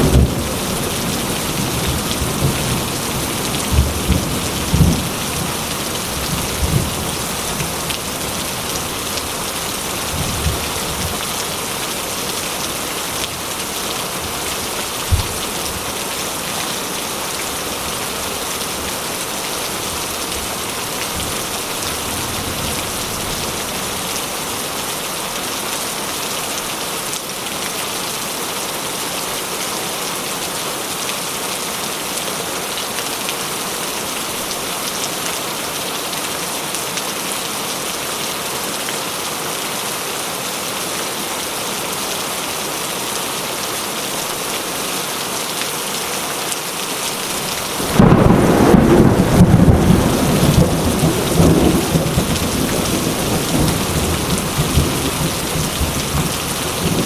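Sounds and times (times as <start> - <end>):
heavy rain falling: 0.0 - 57.0
low rumbles of thunder: 47.8 - 57.0.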